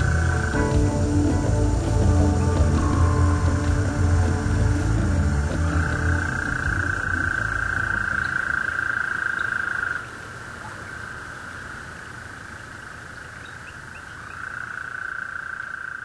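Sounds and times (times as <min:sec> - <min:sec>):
chorus of frogs calling: 0:00.0 - 0:16.0.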